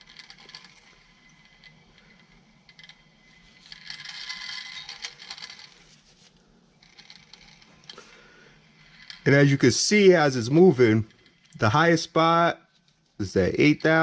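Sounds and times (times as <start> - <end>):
brake rotor scraping and rattling: 0.0 - 11.9.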